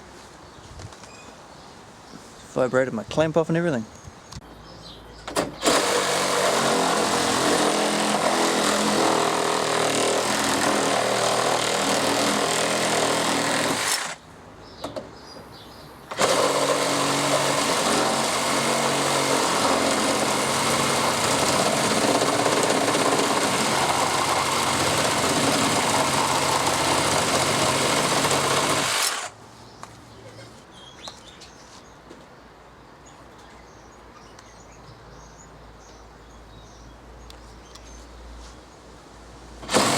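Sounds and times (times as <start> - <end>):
birds: 0.3 - 5.7, 14.1 - 16.2, 29.6 - 38.9
reciprocating saw cutting timber: 5.6 - 14.2, 16.1 - 29.4, 39.6 - 39.9.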